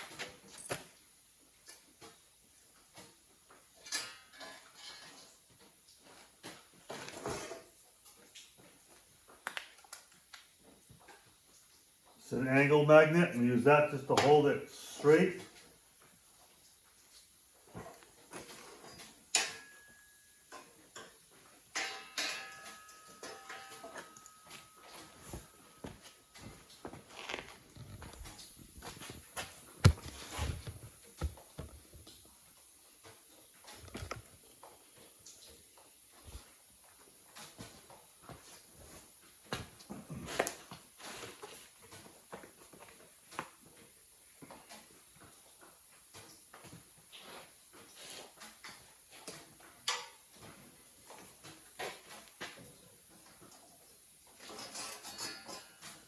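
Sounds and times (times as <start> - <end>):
steel pieces clanking: 18.9 - 25.8, 54.4 - 56.0
metal ringing tone: 19.4 - 20.7, 21.7 - 26.5.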